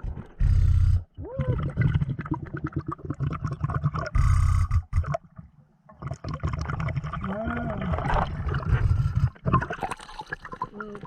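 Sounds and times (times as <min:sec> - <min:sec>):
exhaled bubbles rushing: 0:00.0 - 0:05.2, 0:05.9 - 0:11.0
underwater gurgling: 0:00.0 - 0:11.0.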